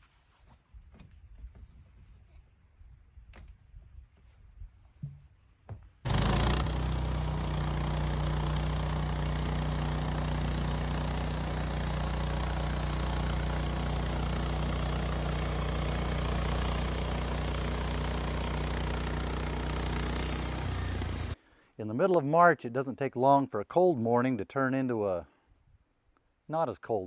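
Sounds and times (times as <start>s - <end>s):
sawmill engine running: 6.1s - 21.4s.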